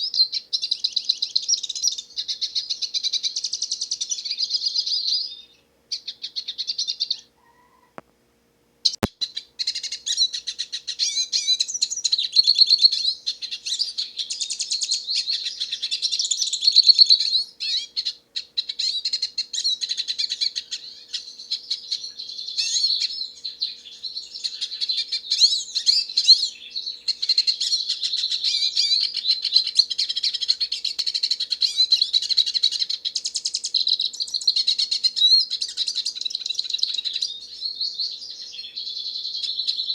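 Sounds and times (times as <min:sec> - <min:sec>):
bird twittering warble: 0:08.9 - 0:39.9.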